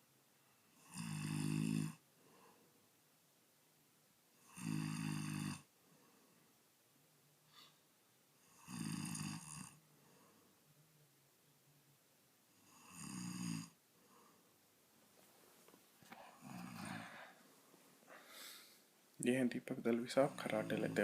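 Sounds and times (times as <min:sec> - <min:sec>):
quiet breathing: 0:00.3 - 0:03.0, 0:04.3 - 0:11.1, 0:12.5 - 0:19.1
man snoring loudly: 0:00.8 - 0:02.0, 0:04.4 - 0:05.7, 0:08.4 - 0:09.8, 0:12.6 - 0:13.8, 0:16.4 - 0:17.2.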